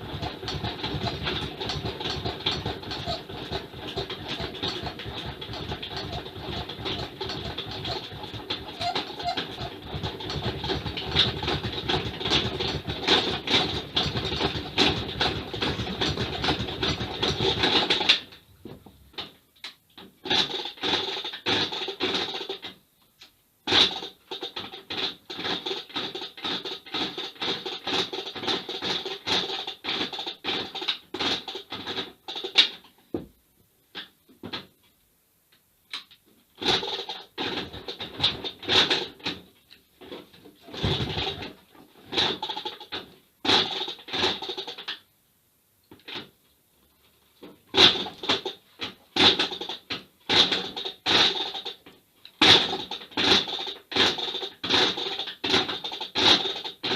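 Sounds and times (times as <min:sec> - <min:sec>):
motorcycle kickstarter ratchet clicking: 0:00.0 - 0:18.3, 0:47.7 - 0:56.9.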